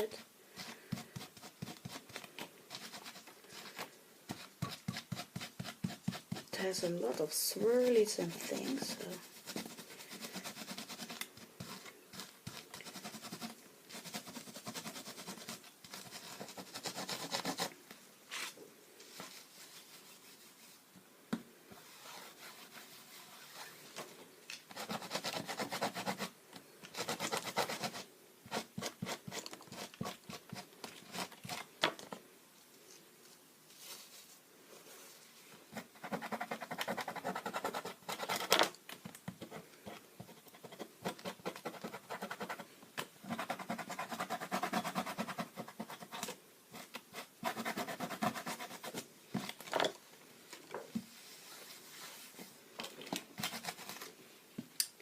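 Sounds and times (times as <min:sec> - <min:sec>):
scratchy rubbing on stencil: 0:00.6 - 0:06.6, 0:07.6 - 0:17.7, 0:24.7 - 0:26.3, 0:27.0 - 0:31.6, 0:35.7 - 0:38.6, 0:40.2 - 0:42.6, 0:43.2 - 0:49.0.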